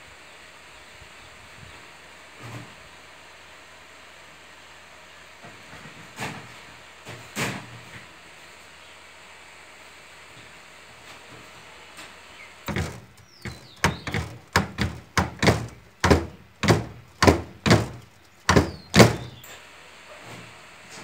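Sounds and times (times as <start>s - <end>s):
sharp thuds and knocks: 12.7s - 19.4s.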